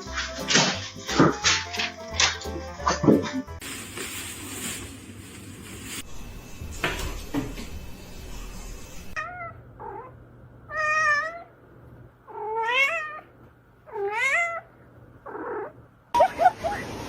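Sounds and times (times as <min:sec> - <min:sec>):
cat meowing: 0:10.7 - 0:11.5, 0:12.3 - 0:13.3, 0:13.9 - 0:14.7.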